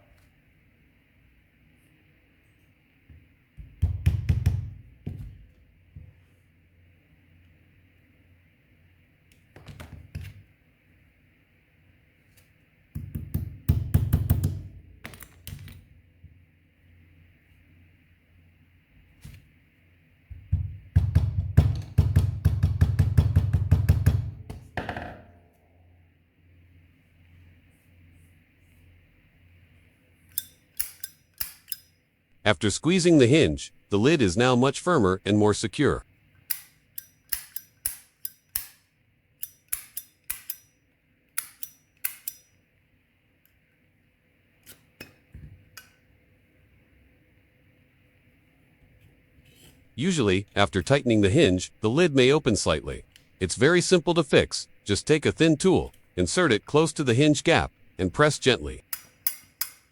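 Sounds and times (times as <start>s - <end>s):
lighter lid clicking open and shut: 30.3s - 31.9s, 36.5s - 38.8s, 39.4s - 40.6s, 41.4s - 42.5s
metallic clack with ring: 30.3s - 32.0s, 36.5s - 40.8s, 41.4s - 42.6s, 58.9s - 59.9s.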